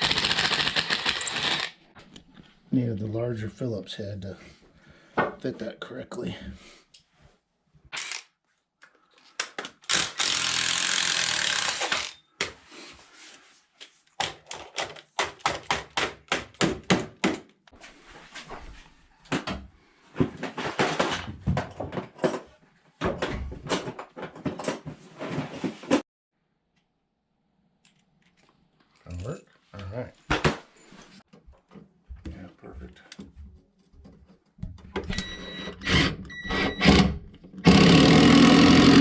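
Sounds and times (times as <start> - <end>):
power drill driving screw: 0.0 - 1.8, 7.9 - 8.3, 9.8 - 12.2, 35.1 - 39.0.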